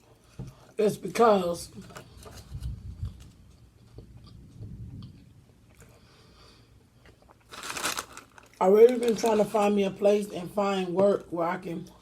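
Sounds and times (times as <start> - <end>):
person chewing food: 1.8 - 8.6.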